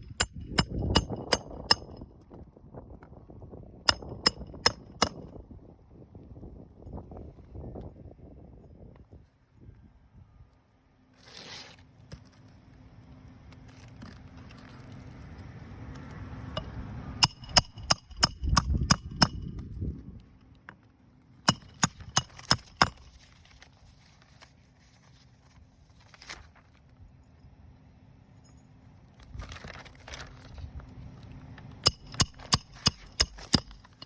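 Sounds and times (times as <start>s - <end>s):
hammer striking nails: 0.0s - 2.0s, 3.9s - 5.2s, 16.6s - 19.5s, 21.5s - 23.2s, 31.9s - 34.0s.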